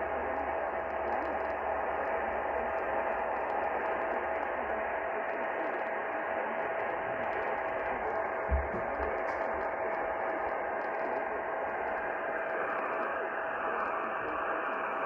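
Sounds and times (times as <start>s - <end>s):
radio static hiss: 0.0s - 15.0s
short low thump: 8.5s - 9.1s.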